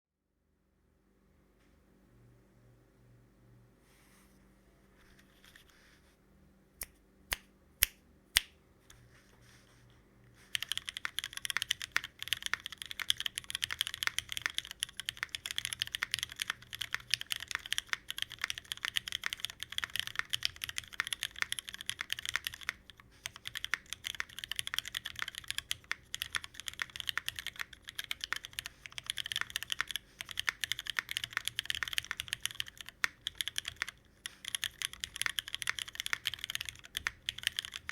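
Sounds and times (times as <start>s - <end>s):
mechanical keyboard typing: 10.4s - 37.9s.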